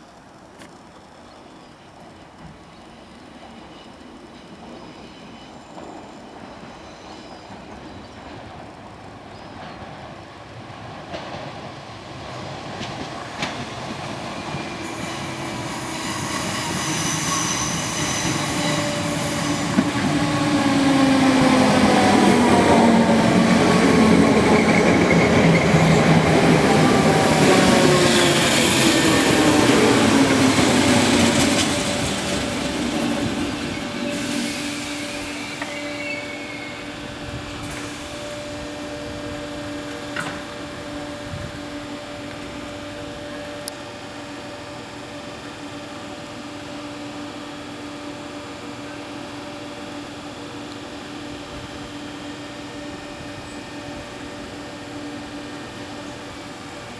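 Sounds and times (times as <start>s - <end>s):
electric train motor whine: 14.3s - 56.9s.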